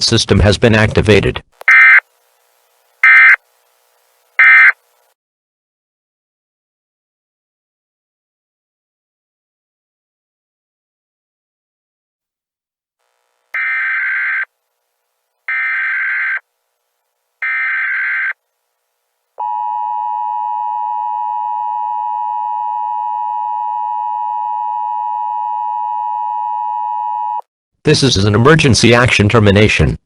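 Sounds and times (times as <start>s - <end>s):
data tone bursts: 1.6s - 2.1s, 3.0s - 3.4s, 4.4s - 4.8s, 13.6s - 14.5s, 15.5s - 16.4s.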